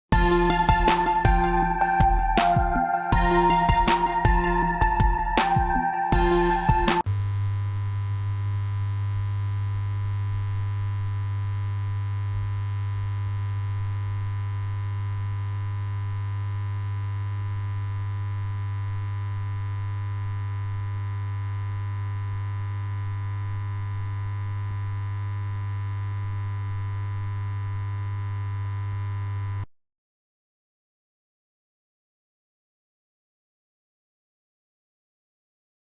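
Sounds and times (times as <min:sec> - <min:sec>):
neon light buzzing: 0:07.1 - 0:29.7.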